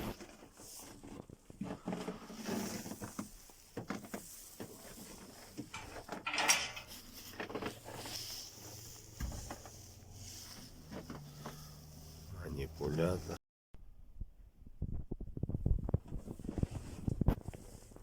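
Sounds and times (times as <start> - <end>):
metal parts clinking: 5.7 - 7.1.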